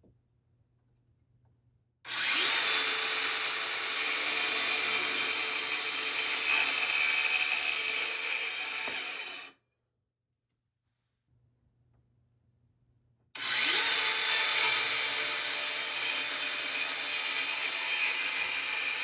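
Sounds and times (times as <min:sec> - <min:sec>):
power tool running in wood: 0:02.1 - 0:08.0, 0:13.4 - 0:18.2.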